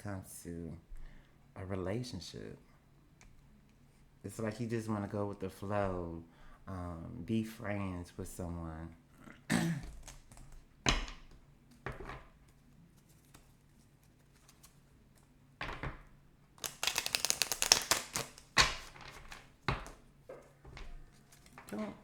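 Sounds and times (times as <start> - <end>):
cards being shuffled: 9.8 - 22.0
cards slapping and tapping: 9.8 - 22.0.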